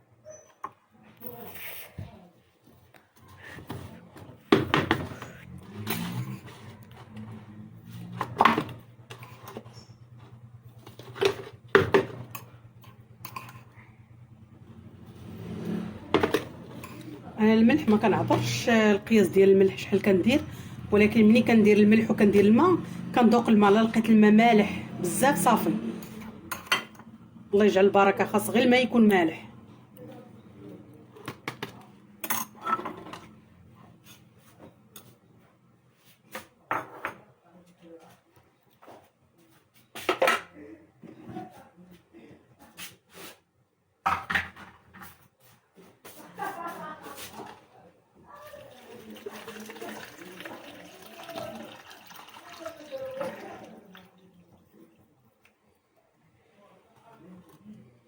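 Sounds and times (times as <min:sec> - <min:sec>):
kitchen containers and utensils clinking: 0:03.6 - 0:13.8, 0:15.2 - 0:27.2, 0:31.1 - 0:34.2, 0:48.6 - 0:55.0
kitchen utensils knocking and clinking: 0:10.8 - 0:13.8, 0:15.6 - 0:18.7, 0:31.2 - 0:33.4.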